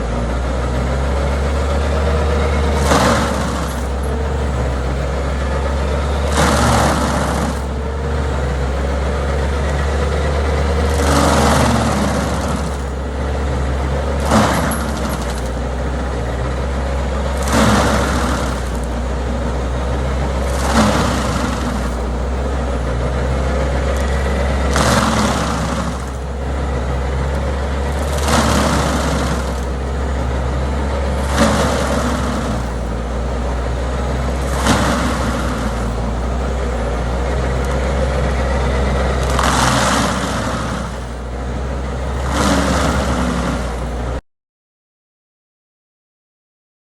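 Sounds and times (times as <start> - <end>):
steady low traffic rumble: 0.0 - 44.2
vehicles passing with whoosh: 0.0 - 44.2.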